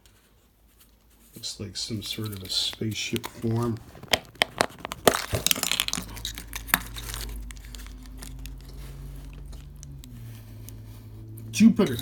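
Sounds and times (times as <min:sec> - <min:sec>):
steady low hum: 0:01.2 - 0:12.0
plastic packets crinkling: 0:01.8 - 0:10.8.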